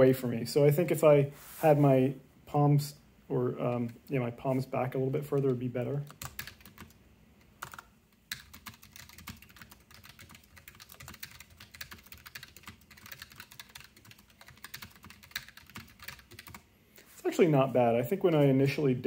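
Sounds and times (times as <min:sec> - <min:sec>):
typing on mechanical keyboard: 0:05.4 - 0:07.0, 0:07.6 - 0:16.6.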